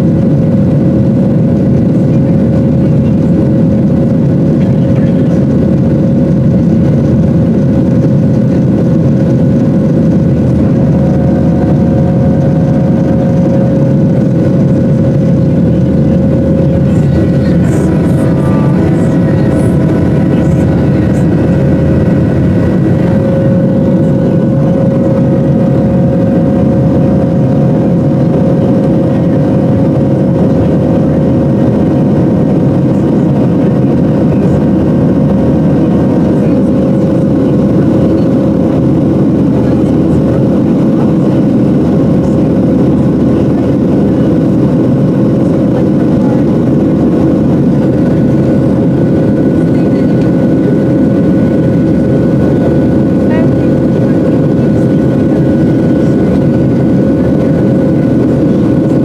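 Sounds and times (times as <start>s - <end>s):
jet engine roar in cabin: 0.0s - 59.0s
engine whining tones: 6.4s - 39.0s.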